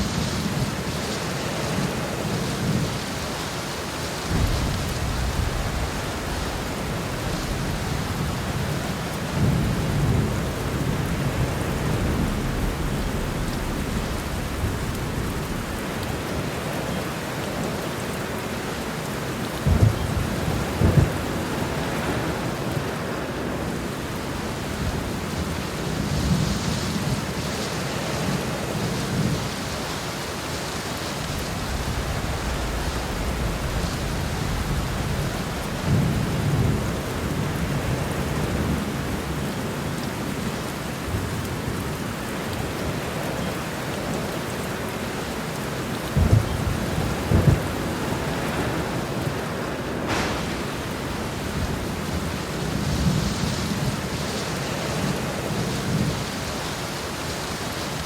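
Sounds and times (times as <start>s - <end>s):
heavy rain pouring: 0.0s - 58.0s
low thunder rumbles: 4.1s - 27.4s, 31.0s - 44.3s, 45.3s - 56.6s
sharp thunder claps: 4.2s - 16.9s, 19.6s - 22.5s, 31.3s - 38.8s, 46.1s - 53.5s.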